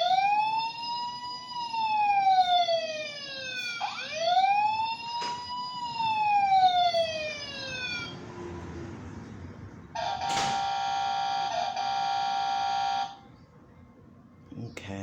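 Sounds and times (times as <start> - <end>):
toy siren wailing: 0.0 - 8.2, 10.0 - 13.2.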